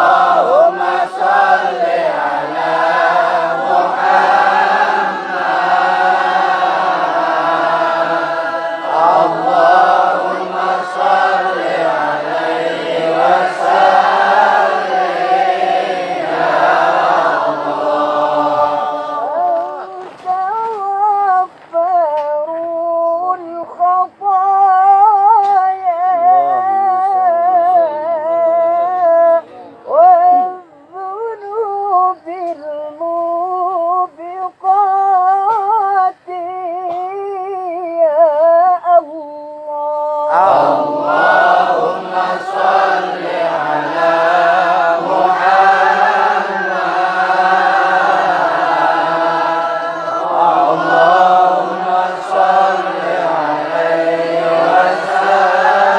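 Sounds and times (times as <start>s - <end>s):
group of voices chanting: 0.0s - 19.9s, 40.3s - 55.9s
solo voice chanting: 0.0s - 55.9s.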